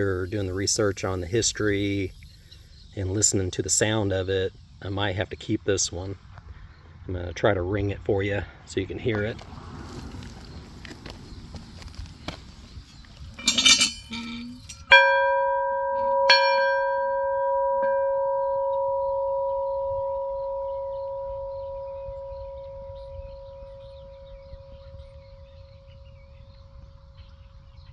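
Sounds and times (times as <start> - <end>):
bell rattling: 13.4 - 15.0
farm bell ringing: 13.4 - 25.0.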